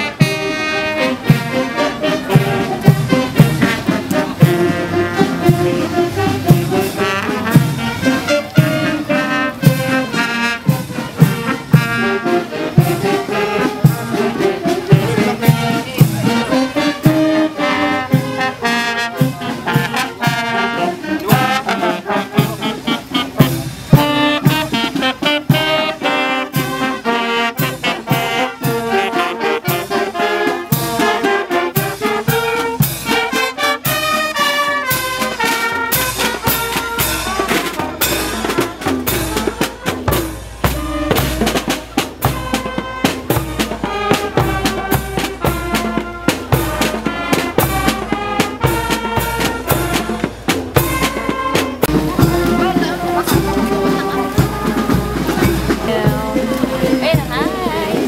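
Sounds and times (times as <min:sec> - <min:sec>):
upbeat brass music: 0:00.0 - 0:58.0.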